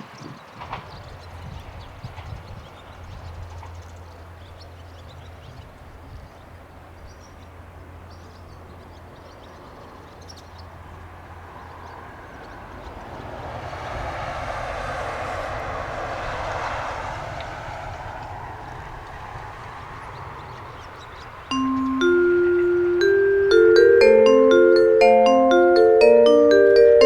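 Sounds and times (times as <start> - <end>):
low train engine hum: 10.6 - 27.0
train rushing past: 11.4 - 27.0.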